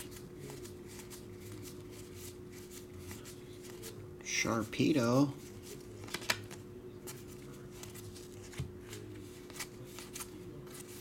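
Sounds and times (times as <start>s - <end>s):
cards flicking by hand: 6.0s - 6.6s.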